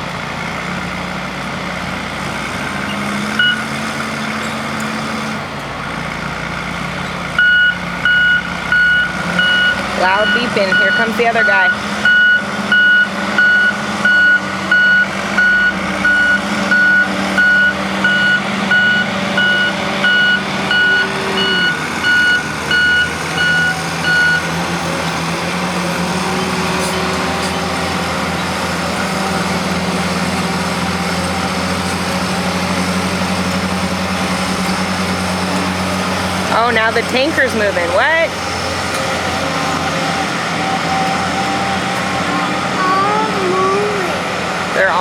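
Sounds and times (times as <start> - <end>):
heavy engine running: 0.0 - 45.0
vehicle backup alarm beeping: 2.8 - 3.8, 7.4 - 24.7, 36.5 - 38.4.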